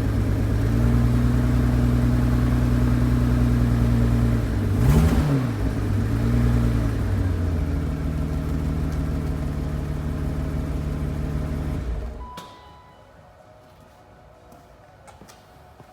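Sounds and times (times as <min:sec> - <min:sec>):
car engine rough idle: 0:00.0 - 0:12.2.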